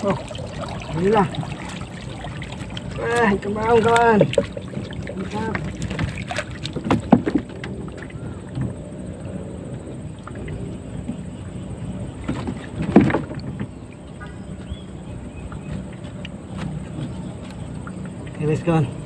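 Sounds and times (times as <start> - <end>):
steady low hum: 0.0 - 19.0
knocks and clatter of fish trap: 2.6 - 8.8, 12.2 - 13.8.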